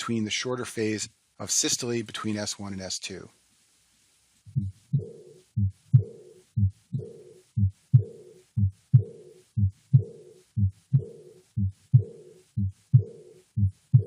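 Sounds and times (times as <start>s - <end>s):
blowing heart murmur: 4.5s - 14.0s
heartbeat thumps: 4.5s - 14.0s.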